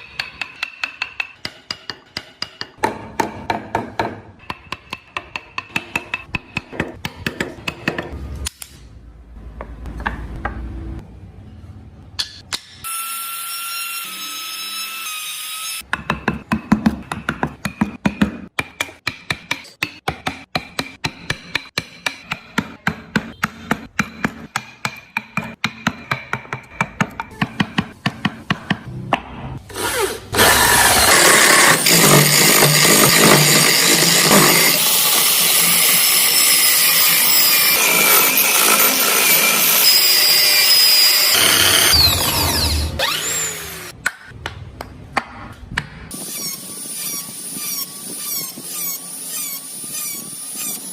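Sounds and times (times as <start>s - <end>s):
power tool running on wood: 30.4s - 43.9s.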